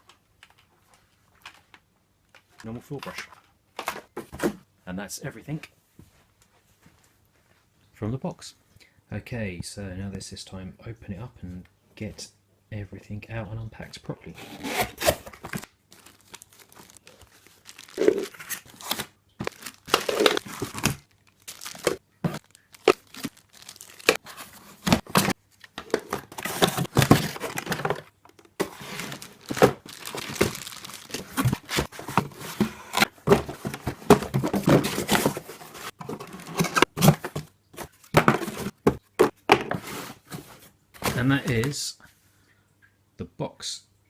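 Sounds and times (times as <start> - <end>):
packaging crinkling and tearing: 14.4 - 37.4.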